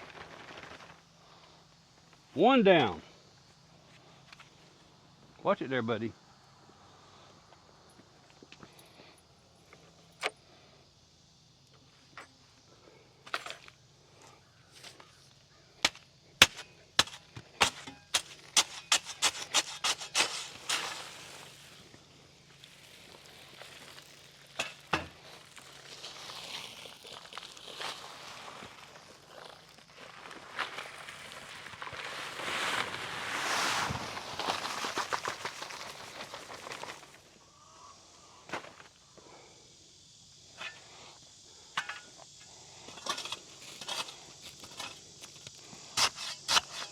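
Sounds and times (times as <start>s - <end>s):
gravel rattling: 0.0s - 2.0s, 15.0s - 39.2s
dry concrete mix pouring: 22.6s - 37.1s.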